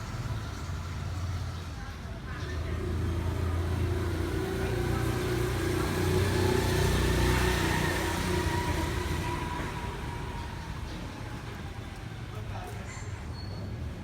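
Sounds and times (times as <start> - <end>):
vehicle engine passing: 2.5 - 11.8.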